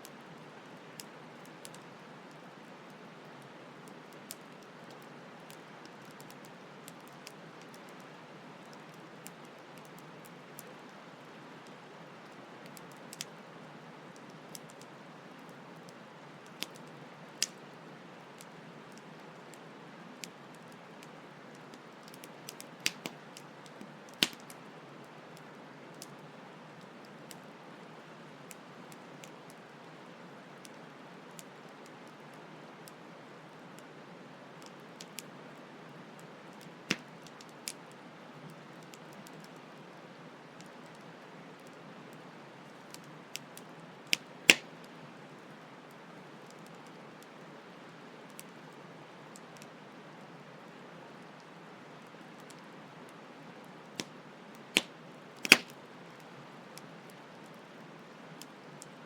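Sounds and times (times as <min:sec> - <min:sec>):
campfire crackling: 0:00.0 - 0:59.0
wood popping in fire: 0:12.6 - 0:13.3, 0:16.4 - 0:17.7, 0:20.2 - 0:24.6, 0:36.9 - 0:38.0, 0:42.8 - 0:44.9, 0:54.0 - 0:55.8.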